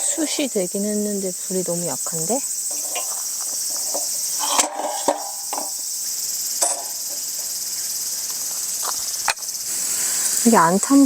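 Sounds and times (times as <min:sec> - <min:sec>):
crickets chirring: 0:00.0 - 0:11.0.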